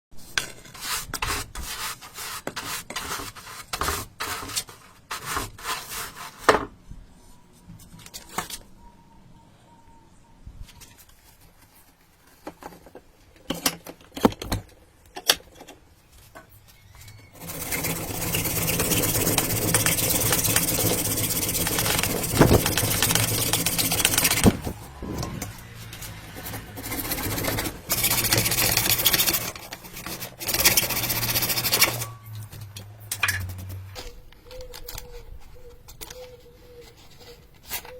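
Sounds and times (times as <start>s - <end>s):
scraping: 15.6s - 37.9s
rasping sawing noise: 17.4s - 32.2s.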